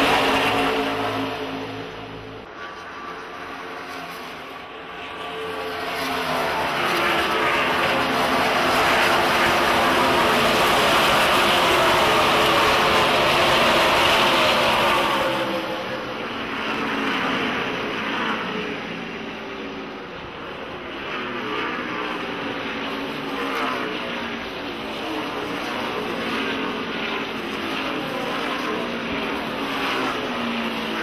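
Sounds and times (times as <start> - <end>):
race cars passing at speed: 0.0 - 31.0.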